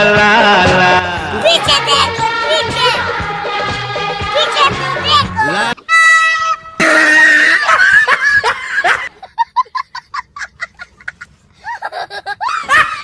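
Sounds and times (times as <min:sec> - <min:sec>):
person exclaiming: 0:05.1 - 0:05.8, 0:06.8 - 0:07.8
train horn blast: 0:05.8 - 0:06.9
startled shout: 0:06.8 - 0:09.0, 0:12.4 - 0:13.0
laughter in rapid pulses: 0:06.8 - 0:13.0.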